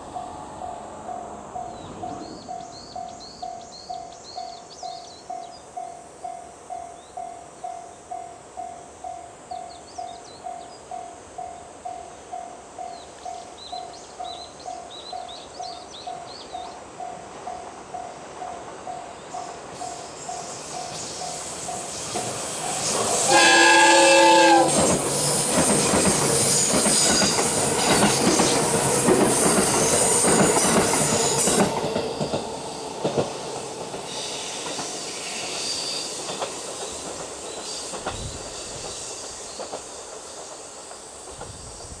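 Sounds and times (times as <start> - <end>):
train wheels clattering on rails: 12.9 - 42.0
train horn: 23.1 - 25.1.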